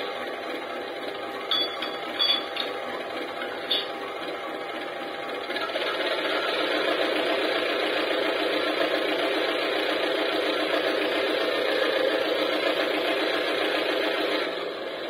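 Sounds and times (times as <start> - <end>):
model locomotive engine running: 0.0 - 15.0.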